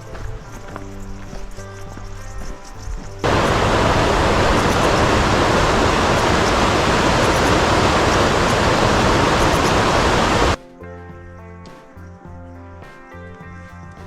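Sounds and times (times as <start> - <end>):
loud steady rushing noise: 3.2 - 10.6.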